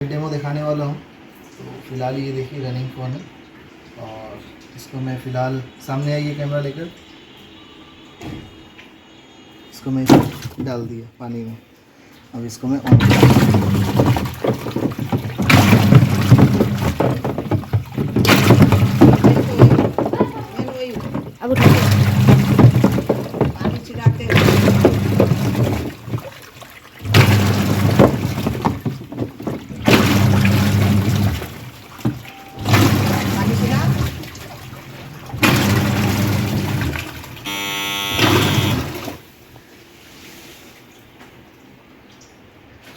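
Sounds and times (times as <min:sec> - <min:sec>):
water sloshing and splashing: 0:00.0 - 0:42.9
brief buzzing tone: 0:37.4 - 0:39.0.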